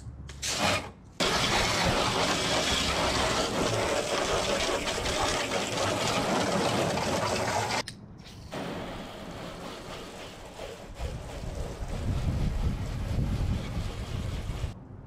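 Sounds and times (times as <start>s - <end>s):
garden hose spraying water: 1.2s - 7.8s.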